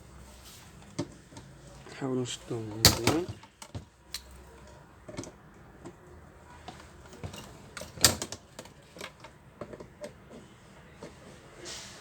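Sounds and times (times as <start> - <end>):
grinder parts clicking and knocking: 2.5 - 10.4.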